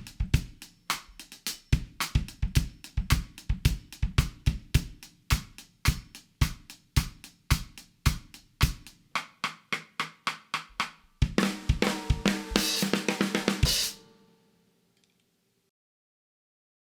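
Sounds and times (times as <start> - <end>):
drum kit playing: 0.0 - 14.1
cymbals ringing: 11.5 - 14.1.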